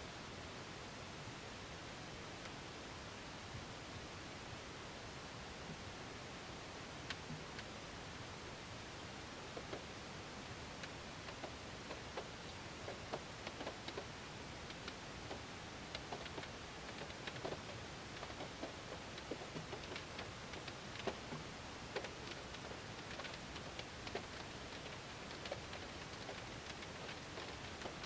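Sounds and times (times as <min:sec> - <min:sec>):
rain hiss on a car: 0:06.6 - 0:28.0
raindrops ticking on car window: 0:09.6 - 0:09.8, 0:10.8 - 0:28.0.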